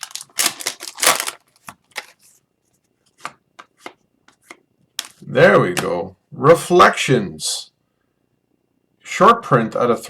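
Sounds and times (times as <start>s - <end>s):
foil wrapper crinkling and tearing: 0.0s - 2.3s.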